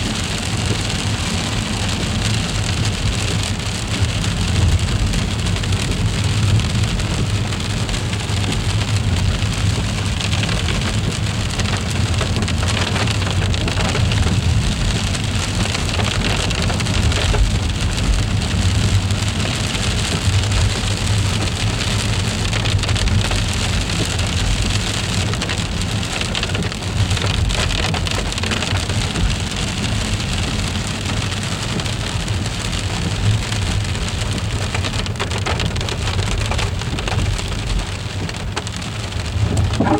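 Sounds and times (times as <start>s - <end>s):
steady rain pattering: 0.0s - 39.9s
low rumble: 39.1s - 39.9s.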